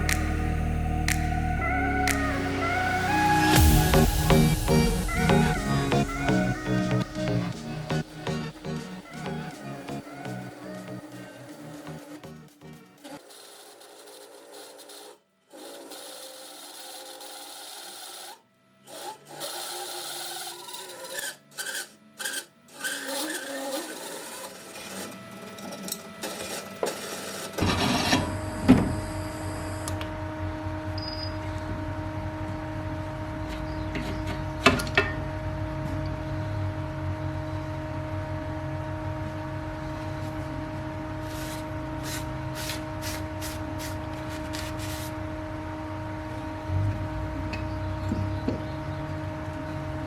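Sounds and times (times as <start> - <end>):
drill press motor humming: 0.0 - 50.0
scraping bursts: 13.0 - 18.3.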